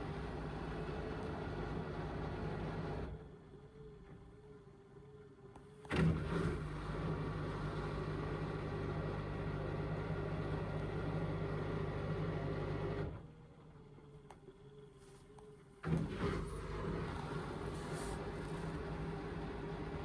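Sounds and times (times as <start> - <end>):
washing machine motor hum: 16.0 - 20.0.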